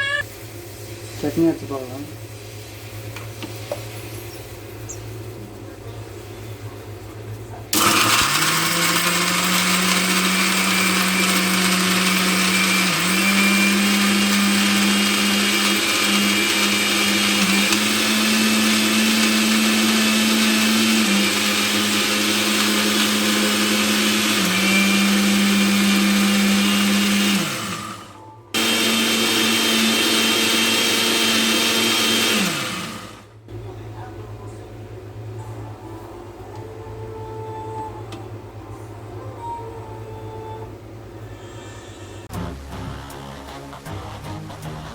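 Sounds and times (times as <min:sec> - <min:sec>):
mixer grinder motor grinding: 0:07.7 - 0:33.3.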